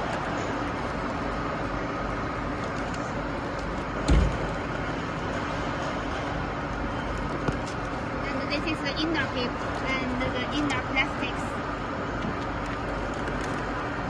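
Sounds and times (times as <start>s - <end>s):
dull thump: 4.0s - 4.4s.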